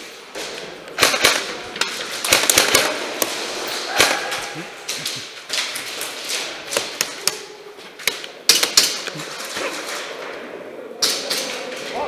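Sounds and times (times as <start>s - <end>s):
airsoft guns firing: 0.3s - 10.0s.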